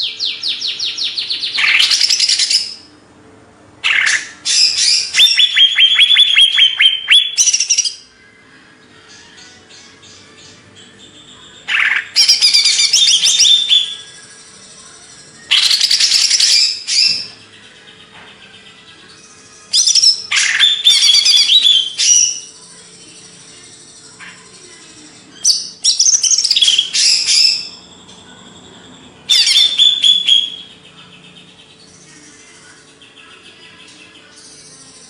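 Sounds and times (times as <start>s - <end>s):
bird chirping and whistling: 0.0s - 2.9s, 3.8s - 8.1s, 11.0s - 17.5s, 19.2s - 24.4s, 25.4s - 30.8s.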